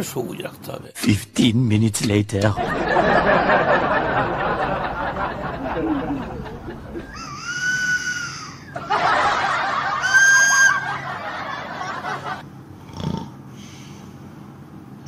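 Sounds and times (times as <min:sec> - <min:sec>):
high clear whistle: 0:10.0 - 0:11.0
rasping fake snore: 0:12.8 - 0:13.4.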